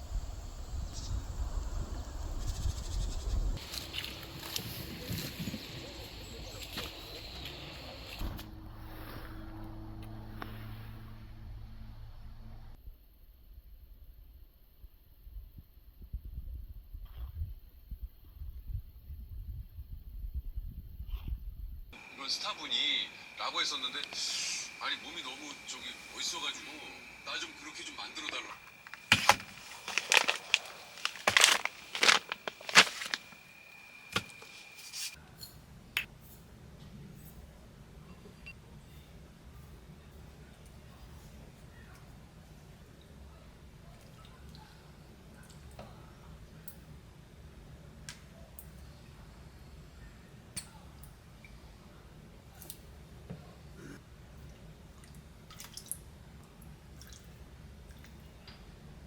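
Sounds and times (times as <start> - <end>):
low steady hum: 0.0 - 14.2
rustles crinkles and clicks: 28.2 - 35.2.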